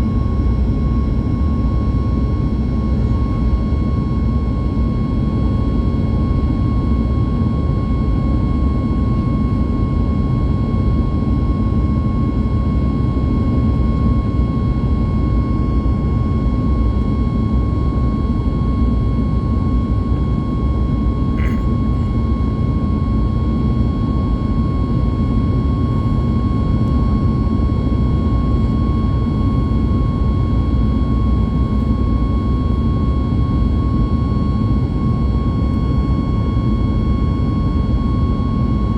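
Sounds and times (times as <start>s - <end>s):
deep rumble of jet engines: 0.0s - 38.9s
high engine whine: 16.0s - 32.4s.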